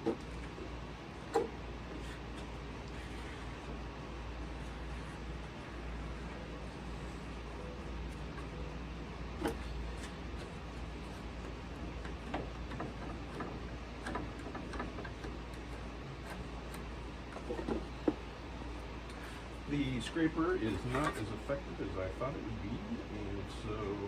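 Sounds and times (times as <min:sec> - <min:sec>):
steady low hum: 0:00.0 - 0:24.0
scraper spreading glue on plywood: 0:01.3 - 0:03.8, 0:04.4 - 0:08.6.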